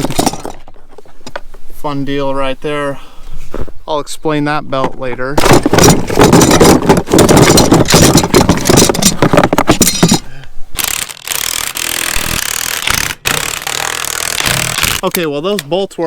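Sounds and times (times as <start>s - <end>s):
metal rattling and scraping: 0.0s - 1.5s, 5.3s - 15.6s.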